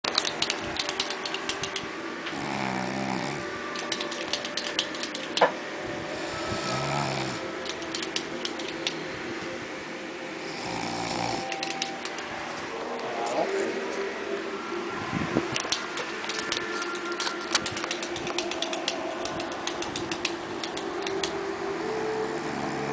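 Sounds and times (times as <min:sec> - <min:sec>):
rapid clicking: 0:00.0 - 0:01.9, 0:03.7 - 0:05.5, 0:07.6 - 0:09.0, 0:11.4 - 0:12.3, 0:15.6 - 0:21.4
person snoring: 0:02.3 - 0:03.5, 0:06.2 - 0:07.4, 0:10.4 - 0:11.5.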